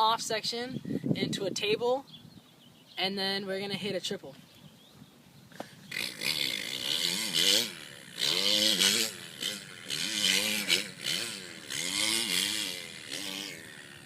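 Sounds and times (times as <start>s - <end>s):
man imitating dirt bike engine: 5.9s - 14.0s.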